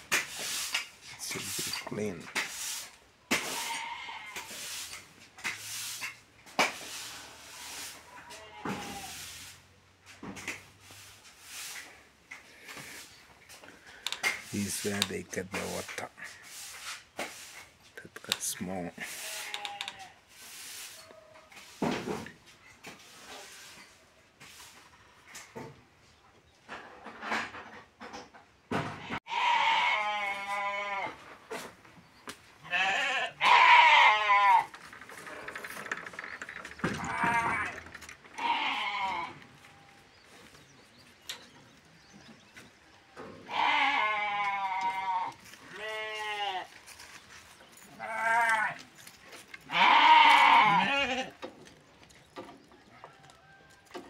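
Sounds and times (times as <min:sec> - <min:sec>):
livestock bleating: 0:03.5 - 0:04.5, 0:08.1 - 0:09.2, 0:19.0 - 0:20.2, 0:29.2 - 0:31.2, 0:32.6 - 0:34.7, 0:36.9 - 0:40.0, 0:43.4 - 0:46.8, 0:47.9 - 0:48.8, 0:49.6 - 0:51.4.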